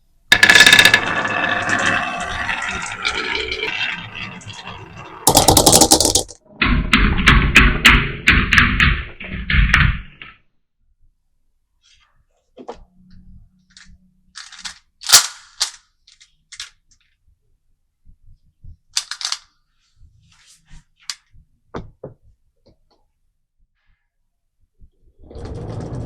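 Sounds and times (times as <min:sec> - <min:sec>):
marbles clacking in a wooden run: 0:00.3 - 0:06.4
marbles rolling rumble: 0:00.3 - 0:06.4, 0:25.2 - 0:26.0.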